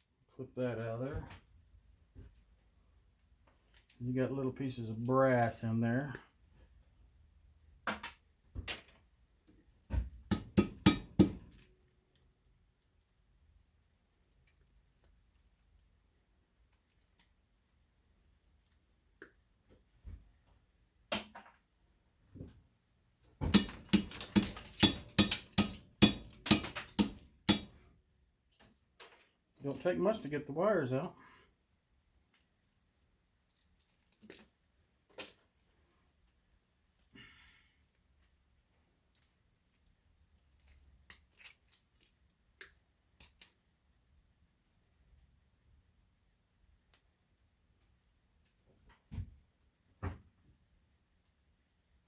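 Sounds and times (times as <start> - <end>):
hard metal strikes ringing: 10.3 - 11.4, 23.5 - 27.8
wire clippers snipping wires: 23.5 - 27.8.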